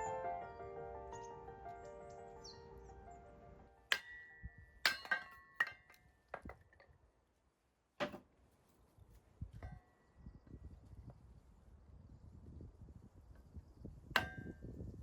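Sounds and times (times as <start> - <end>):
clinks and knocks of hard objects: 3.9 - 7.0.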